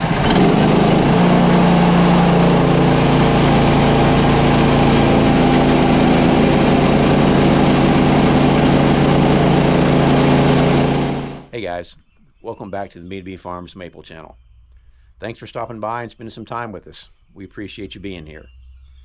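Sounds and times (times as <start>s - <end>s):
engine running: 0.0s - 11.5s.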